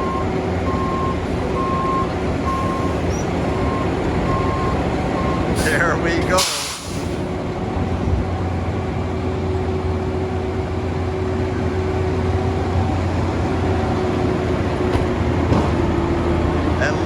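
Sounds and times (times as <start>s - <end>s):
diesel truck engines running: 0.0s - 17.0s.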